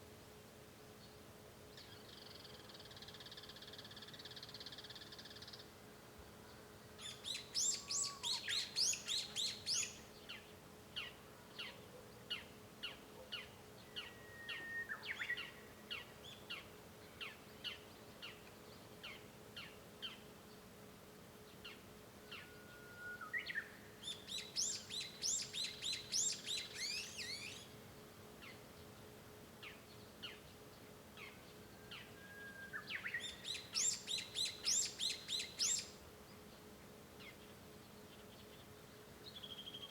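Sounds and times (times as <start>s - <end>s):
faint steady hum: 0.0s - 39.9s
bird singing whistle and trill: 7.0s - 10.0s, 13.9s - 15.6s, 22.4s - 27.6s, 31.9s - 36.0s.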